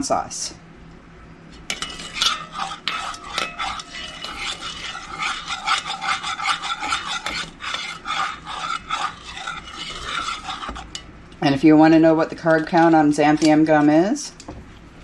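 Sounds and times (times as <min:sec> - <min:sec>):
utensil scraping a pan: 0:01.6 - 0:11.1, 0:12.0 - 0:14.2.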